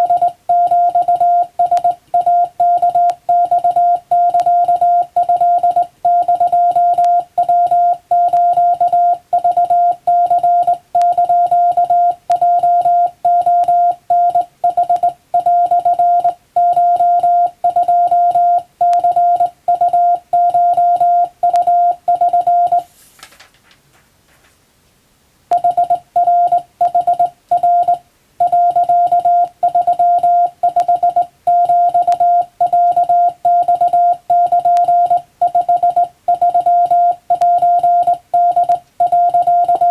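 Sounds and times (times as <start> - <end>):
morse code beeps: 0.0 - 22.9, 25.5 - 39.9
faint rustle: 22.8 - 24.7.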